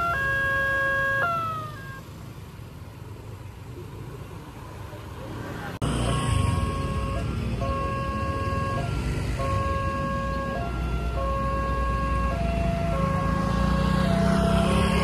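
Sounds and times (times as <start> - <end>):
two-tone level crossing siren: 0.0 - 2.0, 5.8 - 15.0.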